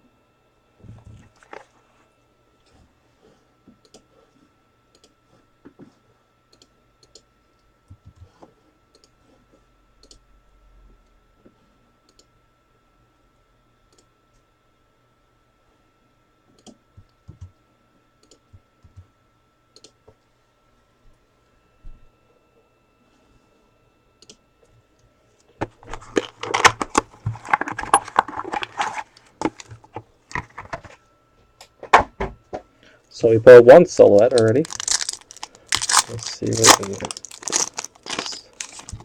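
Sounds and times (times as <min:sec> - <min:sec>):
trading cards shuffled on table: 0:34.1 - 0:39.0.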